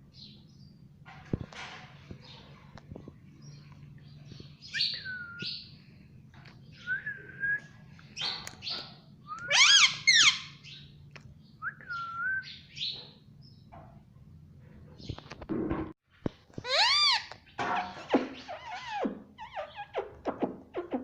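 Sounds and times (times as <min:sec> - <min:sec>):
parakeet chirping and whistling: 0:04.7 - 0:05.6, 0:09.4 - 0:10.8.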